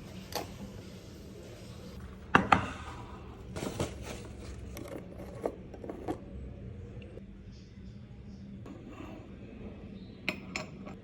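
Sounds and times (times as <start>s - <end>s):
scrape: 8.7s - 9.4s.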